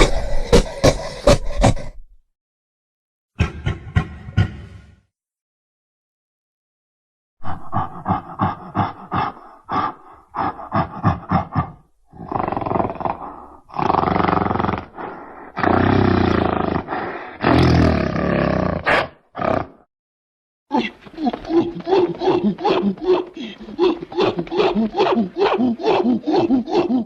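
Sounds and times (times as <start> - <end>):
monster long roars: 12.1 - 19.9.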